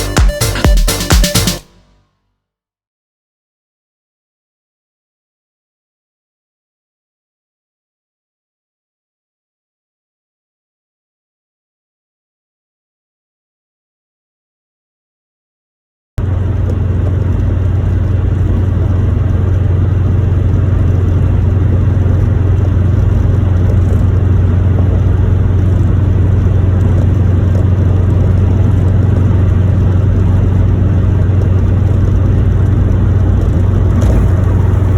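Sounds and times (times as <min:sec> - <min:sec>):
car engine low drone: 0:16.2 - 0:34.9.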